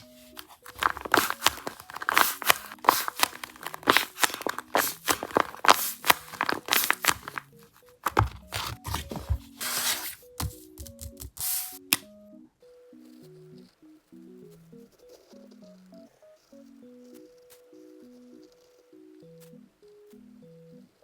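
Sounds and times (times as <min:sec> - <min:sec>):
paper crinkling and crunching: 0:00.0 - 0:11.6
soft background music: 0:00.0 - 0:21.0.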